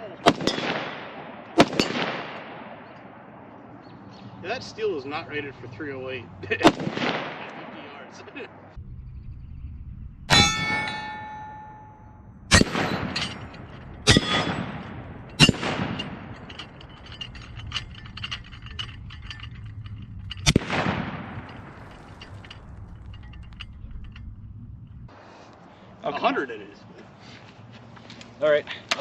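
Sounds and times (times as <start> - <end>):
rifle shots with echo: 0.2 - 3.5, 6.6 - 8.1, 12.5 - 16.5, 20.4 - 22.0.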